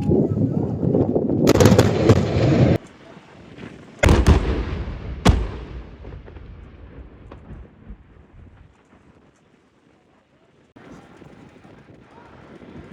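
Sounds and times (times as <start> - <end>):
loud rumble: 1.4 - 2.8.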